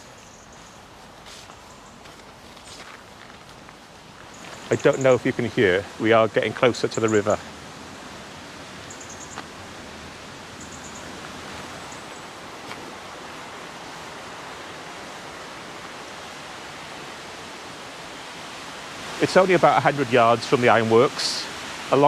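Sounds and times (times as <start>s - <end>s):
river water rushing: 3.0s - 22.0s.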